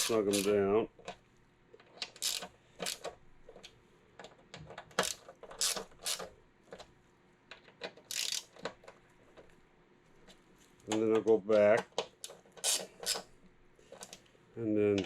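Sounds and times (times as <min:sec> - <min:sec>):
hand ratchet clicking: 0:00.0 - 0:00.6, 0:02.0 - 0:03.1, 0:05.0 - 0:06.3, 0:08.1 - 0:08.6, 0:11.6 - 0:13.3.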